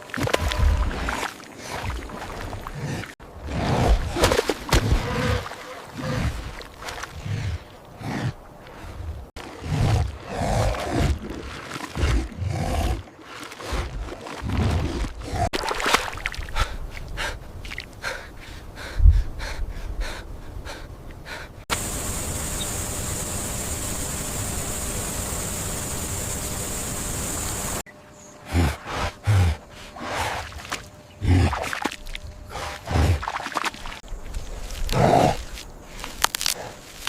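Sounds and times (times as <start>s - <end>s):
steady rushing hiss: 21.7s - 27.9s
low grunts and snorts: 28.4s - 29.7s, 34.9s - 35.5s.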